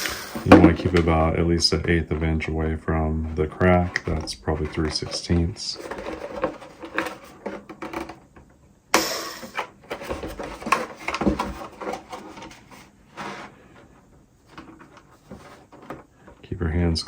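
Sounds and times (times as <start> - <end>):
drill boring into plastic: 0.0 - 0.5.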